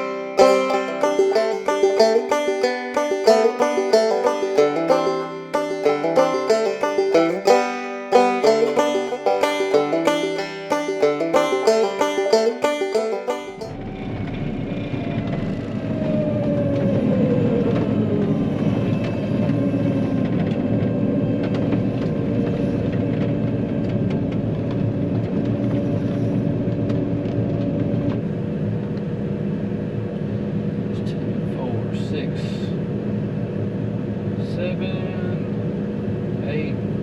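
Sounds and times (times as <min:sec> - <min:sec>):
farm vehicle engine drone: 0:00.0 - 0:37.0.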